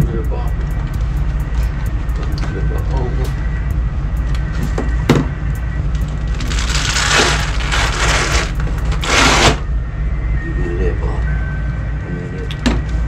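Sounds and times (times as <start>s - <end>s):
background music with bass: 0.0s - 11.3s
harsh scraping and ripping: 6.0s - 9.6s.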